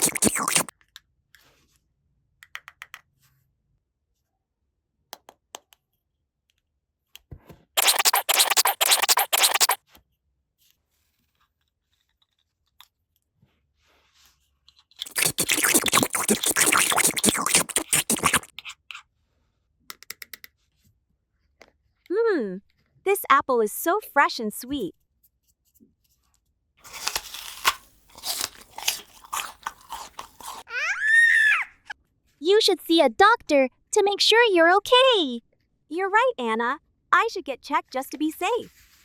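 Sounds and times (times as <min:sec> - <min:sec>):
crisp crunching and scratching: 0:00.0 - 0:00.7, 0:07.8 - 0:09.8, 0:15.0 - 0:18.5, 0:26.9 - 0:30.7.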